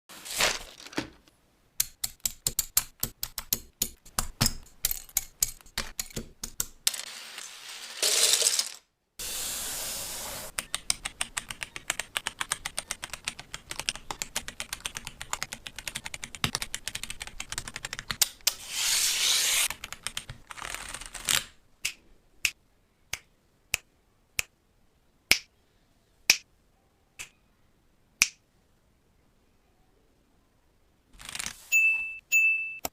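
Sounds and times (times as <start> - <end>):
mechanical keyboard keys clicking: 10.6 - 18.4.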